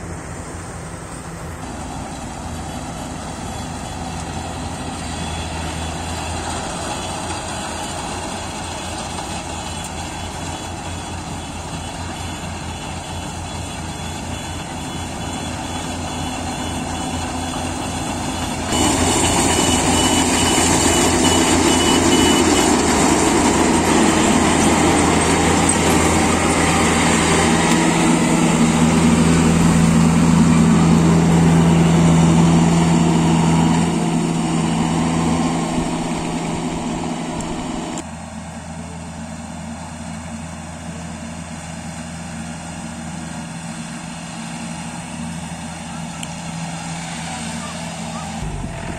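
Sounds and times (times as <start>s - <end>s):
combine harvester running: 0.0s - 48.9s
high whine: 15.2s - 38.0s, 47.6s - 48.9s.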